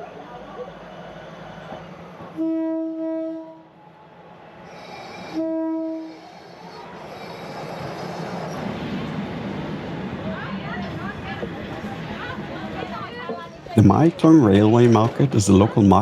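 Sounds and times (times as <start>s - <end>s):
train horn blasts: 2.3s - 3.7s, 5.1s - 6.3s.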